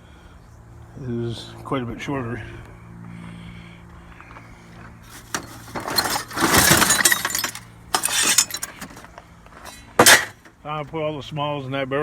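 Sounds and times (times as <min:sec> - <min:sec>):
scrap metal clattering and crashing: 0:05.1 - 0:10.5.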